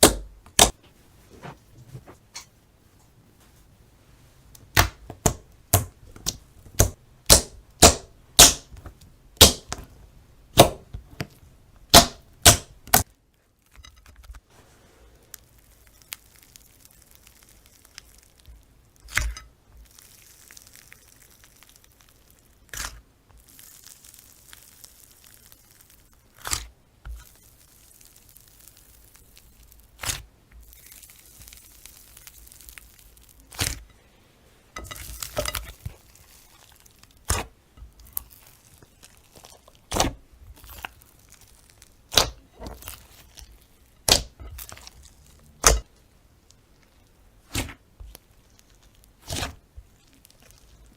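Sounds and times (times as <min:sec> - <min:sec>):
soft sticky slime crackling: 0:00.0 - 0:50.9
slime crackling pops: 0:04.7 - 0:08.8, 0:15.3 - 0:33.8, 0:35.2 - 0:45.9, 0:47.4 - 0:50.9.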